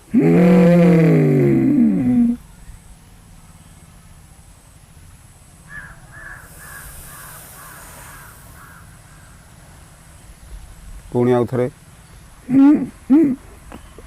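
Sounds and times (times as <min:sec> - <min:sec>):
crow cawing: 0:05.7 - 0:09.4.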